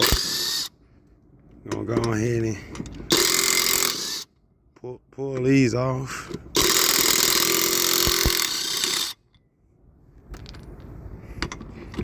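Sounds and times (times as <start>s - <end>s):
impact wrench running: 0.0s - 0.7s, 3.1s - 4.3s, 6.5s - 9.2s.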